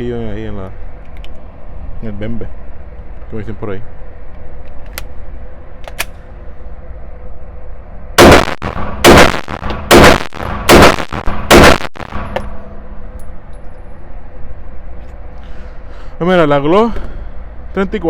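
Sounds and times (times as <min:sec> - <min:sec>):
pistol shots: 0:08.2 - 0:12.4.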